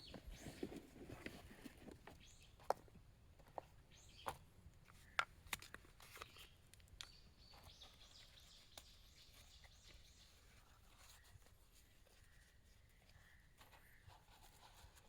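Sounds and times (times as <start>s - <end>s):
faint bird chirps: 0.0s - 0.8s, 3.9s - 4.4s, 6.2s - 15.0s.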